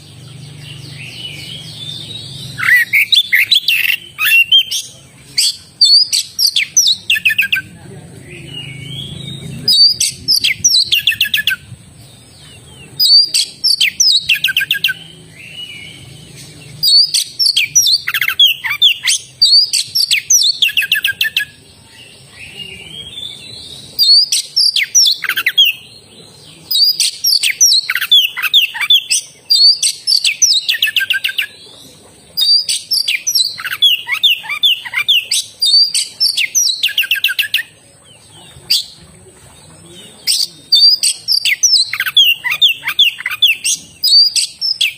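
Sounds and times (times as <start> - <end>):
magpie-robin singing: 0.0 - 39.0, 39.8 - 44.9.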